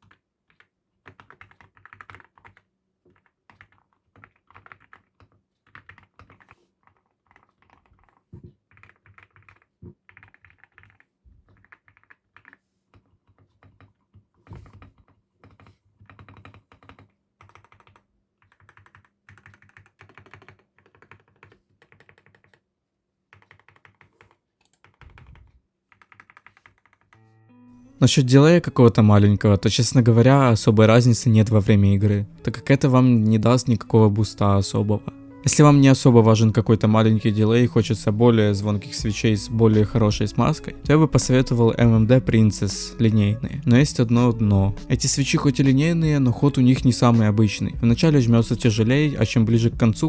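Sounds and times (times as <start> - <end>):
mechanical keyboard typing: 0.0 - 22.6, 23.3 - 27.2.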